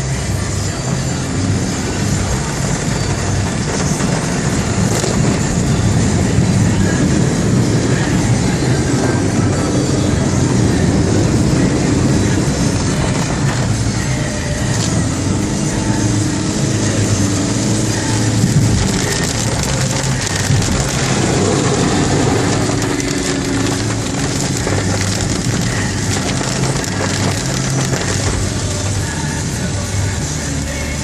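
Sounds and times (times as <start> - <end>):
heavy rain hissing: 0.0 - 31.0
vehicle engines humming: 0.0 - 31.0.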